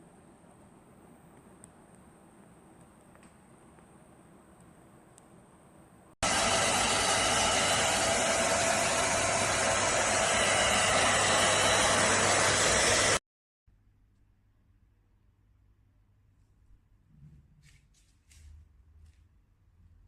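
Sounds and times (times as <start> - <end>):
stick vacuum cleaner running: 6.2 - 13.2.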